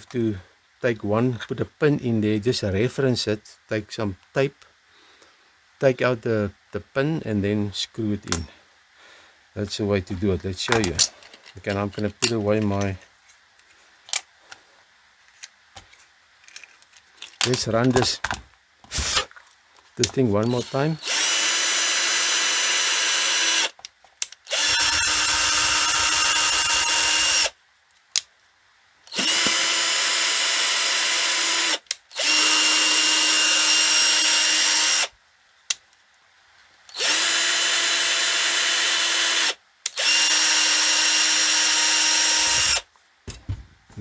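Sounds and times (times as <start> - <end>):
electric drill whining: 18.9 - 19.3, 20.4 - 23.8, 24.5 - 27.5, 29.1 - 35.1, 36.9 - 42.8.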